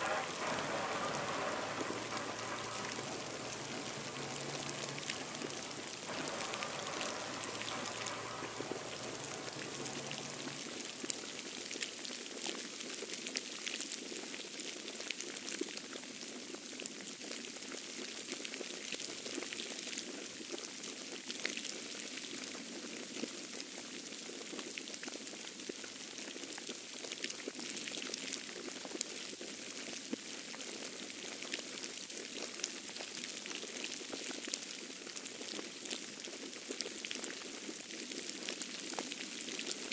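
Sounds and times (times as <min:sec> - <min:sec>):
wet snow falling: 0:00.0 - 0:11.1
faint low hum: 0:00.0 - 0:11.3.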